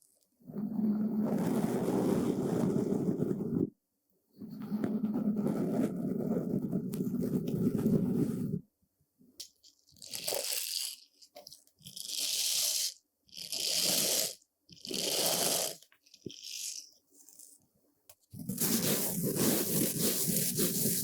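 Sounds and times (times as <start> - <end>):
brush sweeping a surface: 18.4 - 21.0.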